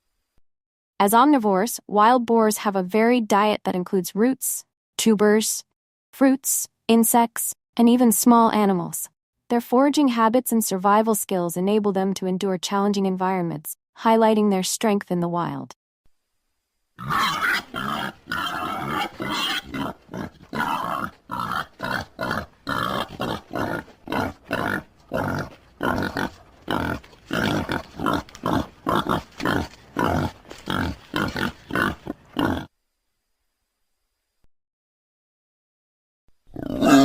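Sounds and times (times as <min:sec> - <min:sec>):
wild boar grunting: 0:17.0 - 0:32.7, 0:36.5 - 0:37.0.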